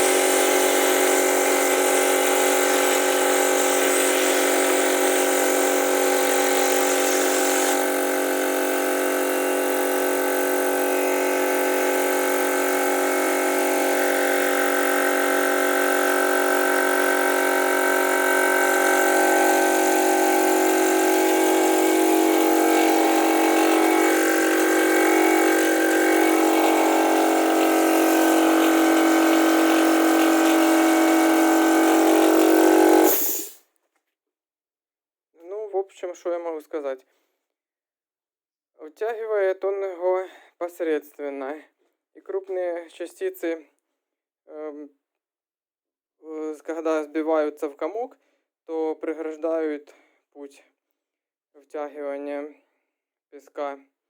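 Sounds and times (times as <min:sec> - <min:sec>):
air vacuum gun hissing: 0:18.0 - 0:33.6.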